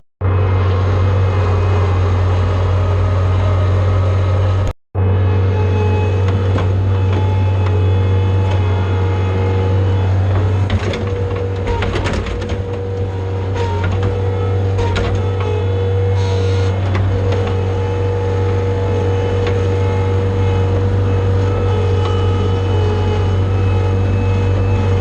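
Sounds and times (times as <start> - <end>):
diesel engine droning and whining: 0.0 - 25.0
knocks and rattles: 6.2 - 22.3.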